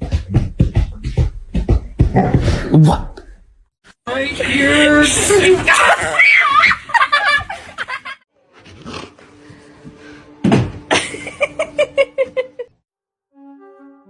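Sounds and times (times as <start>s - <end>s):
brass music: 13.3s - 14.0s.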